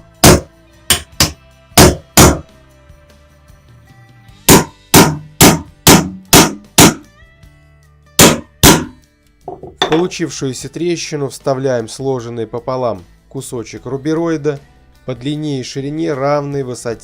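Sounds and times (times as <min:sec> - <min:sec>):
hammer striking wedges: 0:00.2 - 0:02.5, 0:04.5 - 0:07.1, 0:08.2 - 0:10.2.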